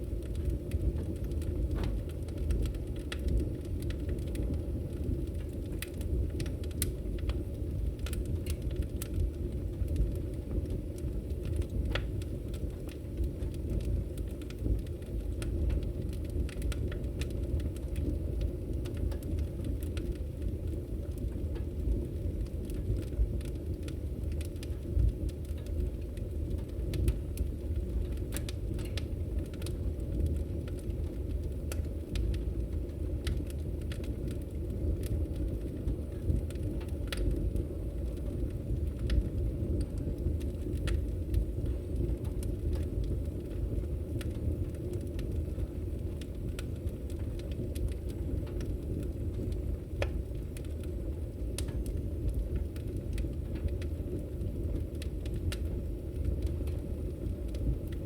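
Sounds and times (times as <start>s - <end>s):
fire crackles and pops: 0.0s - 58.0s
fire rumbling in fireplace: 0.0s - 58.0s.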